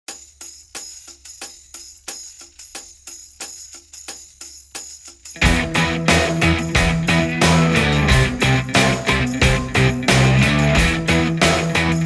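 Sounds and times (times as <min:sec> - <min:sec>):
jingling percussion hits: 0:00.1 - 0:12.0
full band playing loudly: 0:05.4 - 0:12.0.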